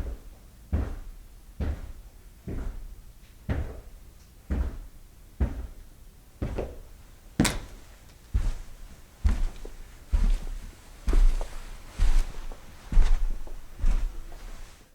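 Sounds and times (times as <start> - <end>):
footsteps walking: 0.0 - 2.8, 6.4 - 14.9.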